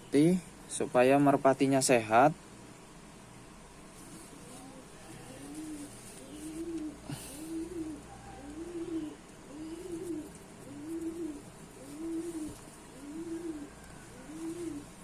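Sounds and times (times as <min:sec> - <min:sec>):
pigeon cooing: 0:04.2 - 0:15.0.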